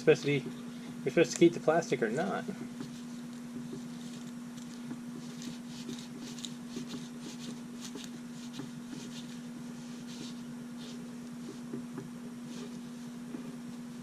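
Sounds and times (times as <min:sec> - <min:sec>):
low electrical hum: 0:00.0 - 0:14.0
soft rustling: 0:02.2 - 0:14.0.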